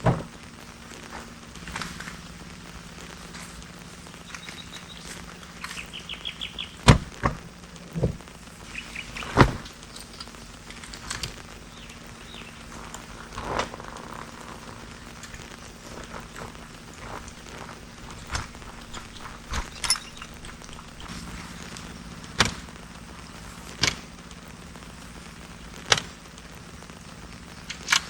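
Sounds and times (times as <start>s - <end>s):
low hum and hiss: 0.0s - 28.0s
bird chirping: 4.2s - 6.9s, 8.6s - 10.6s, 11.6s - 13.0s, 18.2s - 21.1s.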